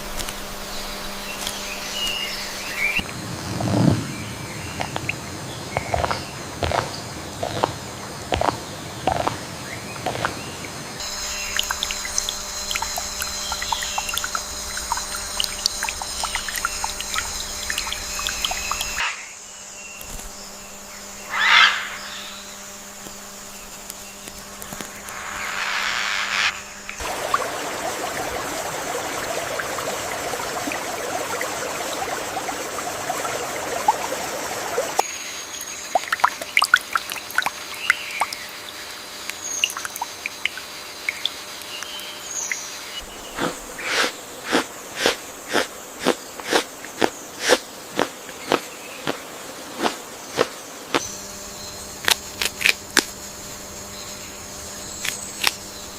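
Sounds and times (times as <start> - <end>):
animal drones with clicks: 0.0 - 19.3, 21.3 - 27.4, 49.8 - 53.2, 54.2 - 55.9
trickling water: 10.0 - 19.0, 27.0 - 41.7, 42.5 - 46.6
short animal calls and chirps: 21.2 - 22.5
loud swelling sounds: 24.7 - 35.0.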